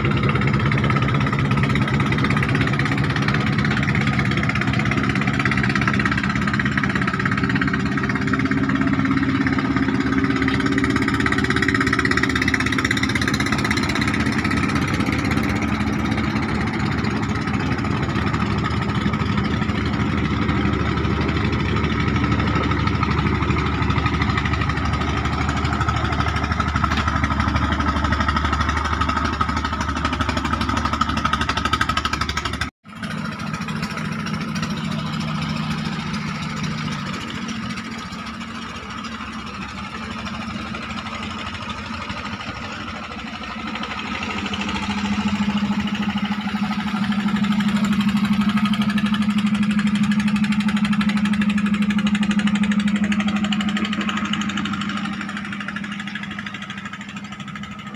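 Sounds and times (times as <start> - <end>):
boat diesel engine running: 0.0 - 57.9.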